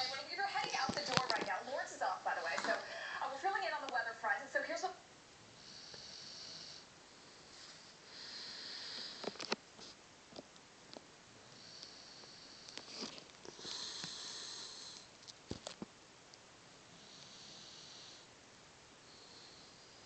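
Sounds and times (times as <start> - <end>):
dog snoring: 5.6 - 9.3, 11.6 - 15.1, 17.0 - 18.3, 19.1 - 20.0.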